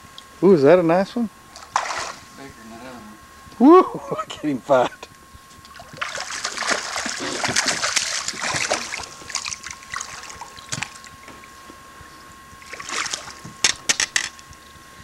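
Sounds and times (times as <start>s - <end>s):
fish splashing and thrashing: 1.6s - 2.3s, 5.6s - 11.6s, 12.6s - 14.7s.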